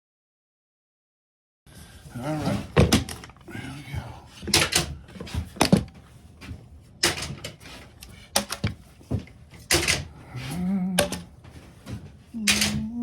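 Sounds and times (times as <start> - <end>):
tools knocking and clunking: 4.4 - 10.2, 10.9 - 13.0.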